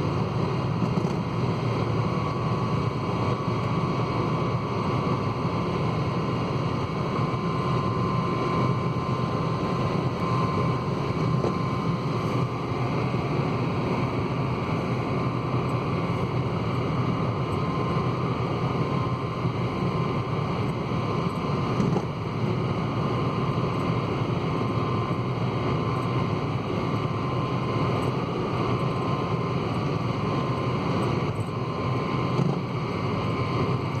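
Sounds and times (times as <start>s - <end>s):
car running noise: 0.0s - 34.0s
thin steady whine: 0.0s - 34.0s.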